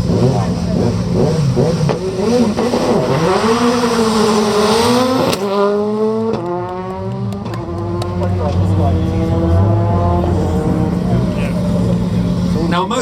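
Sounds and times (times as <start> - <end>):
rally car engine revving: 0.0 - 13.0
exhaust pops: 0.1 - 3.2, 5.1 - 5.6.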